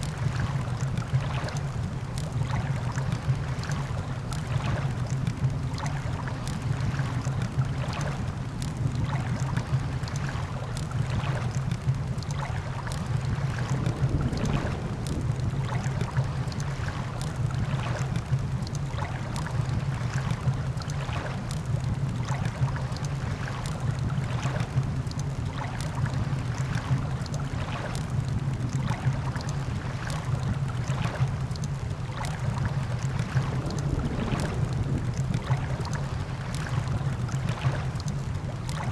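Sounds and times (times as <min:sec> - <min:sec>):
low rumble: 0:13.2 - 0:18.7, 0:26.1 - 0:38.9.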